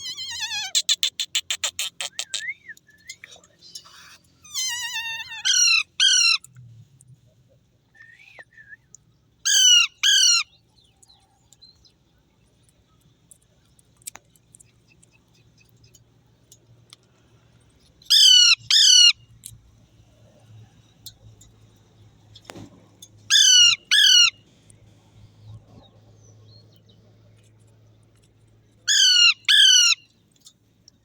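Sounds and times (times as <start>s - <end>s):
parakeet squawking: 0.0s - 2.4s, 4.5s - 6.4s, 23.3s - 24.3s, 28.9s - 30.0s.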